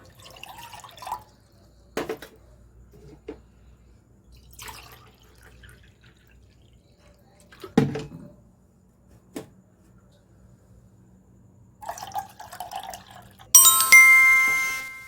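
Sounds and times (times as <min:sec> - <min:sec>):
water pouring into saucepan: 0:04.6 - 0:06.3.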